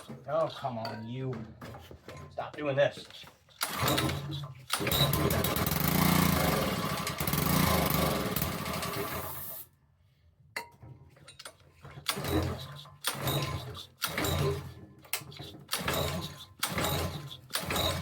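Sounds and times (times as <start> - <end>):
small engine running: 3.6 - 9.6, 15.3 - 18.0
engine sputtering bursts: 4.8 - 9.4.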